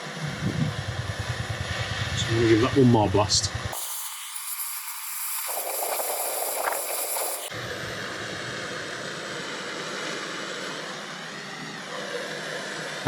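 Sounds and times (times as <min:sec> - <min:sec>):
low steady rushing noise: 0:00.0 - 0:03.8
blowtorch hissing: 0:00.1 - 0:13.0.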